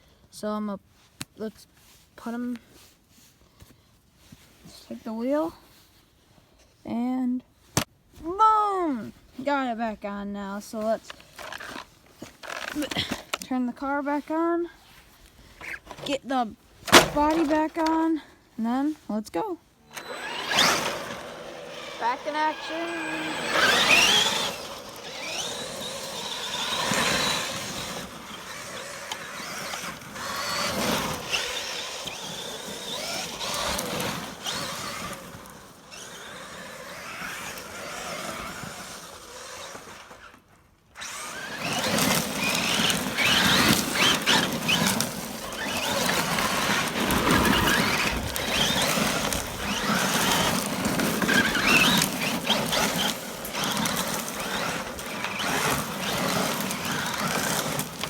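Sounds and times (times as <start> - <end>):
tyres scrabbling over ground: 10.8 - 14.3, 14.9 - 18.1, 19.9 - 40.4, 41.0 - 58.0
electric motor whine: 19.9 - 40.2, 41.0 - 58.0.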